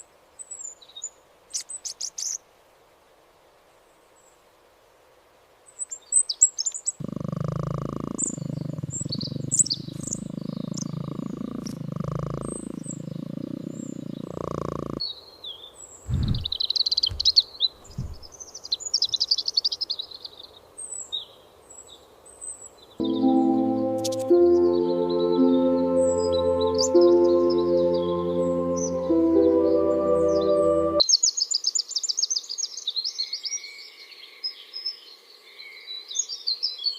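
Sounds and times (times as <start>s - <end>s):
small birds chirping: 0.4s - 2.4s, 5.8s - 23.1s
soft music with held notes: 23.0s - 31.0s.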